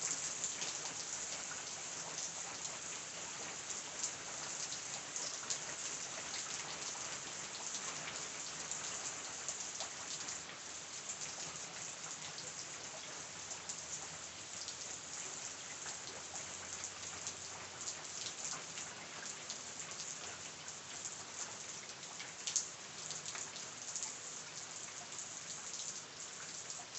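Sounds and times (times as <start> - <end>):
steady rain falling: 0.0 - 26.9.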